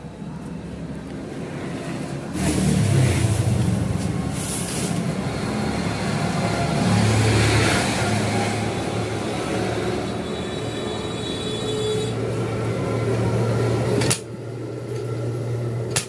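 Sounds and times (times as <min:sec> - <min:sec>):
vehicle engine rumble passing: 0:00.0 - 0:11.2.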